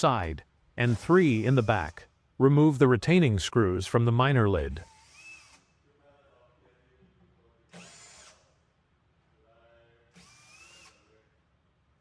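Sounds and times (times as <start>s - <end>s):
drill running: 0.8s - 2.0s, 4.8s - 5.7s, 7.7s - 8.6s, 10.1s - 11.1s.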